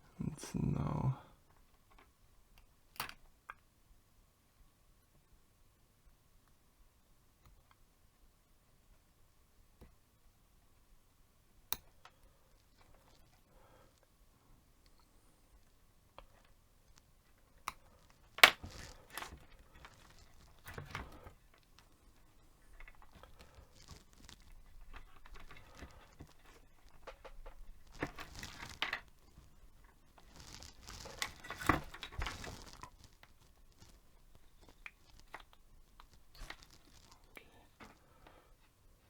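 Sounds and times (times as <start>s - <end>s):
rustling and crinkling: 11.9s - 39.0s.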